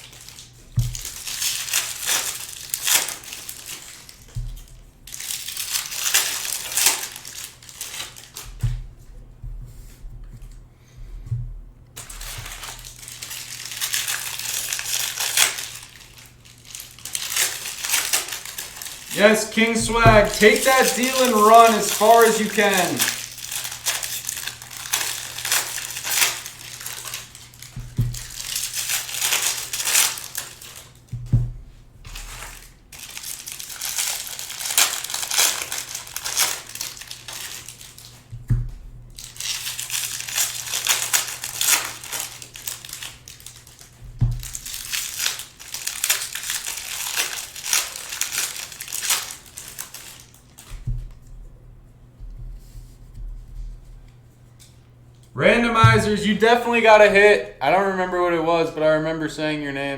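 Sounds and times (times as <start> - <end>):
plastic wrappers crinkling and tearing: 0.0 - 8.6, 12.0 - 31.1, 32.1 - 51.1.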